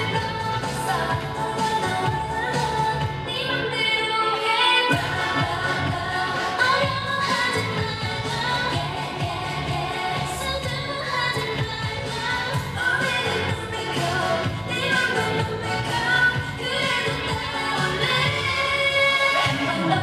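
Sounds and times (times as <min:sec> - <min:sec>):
person singing: 0:00.0 - 0:20.0
pop backing track with beat: 0:00.0 - 0:20.0.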